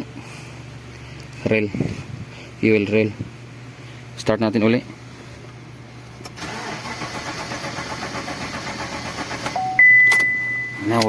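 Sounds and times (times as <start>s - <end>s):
car engine cranking: 6.2s - 11.0s
high-pitched beep: 9.6s - 11.0s.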